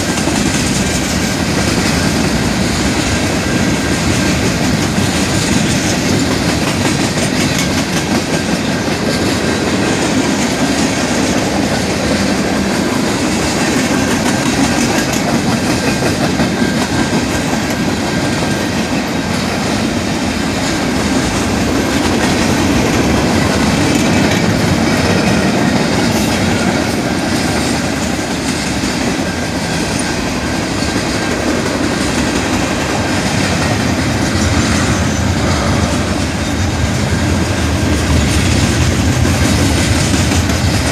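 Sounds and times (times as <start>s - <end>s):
freight train wheels rumbling: 0.0s - 40.9s
wheels clattering over rail joints: 0.0s - 40.9s.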